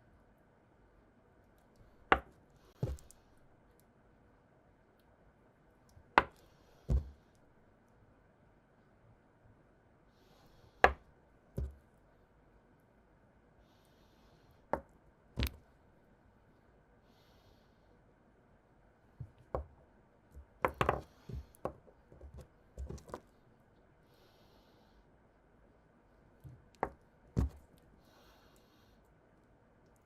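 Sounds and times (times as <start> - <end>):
small objects knocking on hard surface: 2.1 - 3.2, 20.4 - 23.2, 26.8 - 27.6.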